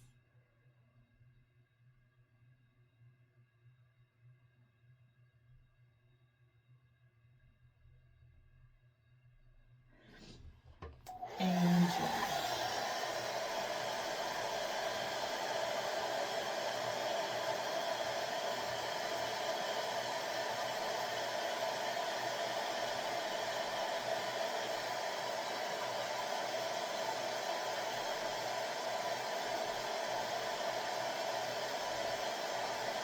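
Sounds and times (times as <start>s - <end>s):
hair dryer blowing: 11.0s - 33.0s.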